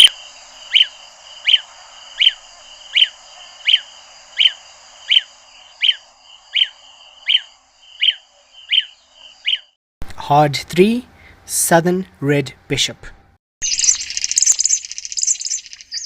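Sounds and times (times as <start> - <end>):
field recording hiss: 0.0 - 9.3.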